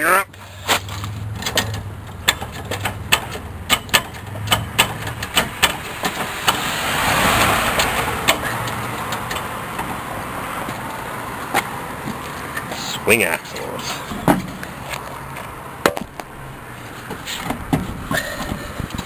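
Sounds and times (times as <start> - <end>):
car jack clicking: 0.8 - 6.7, 7.4 - 10.0
broad rushing noise: 3.6 - 19.0.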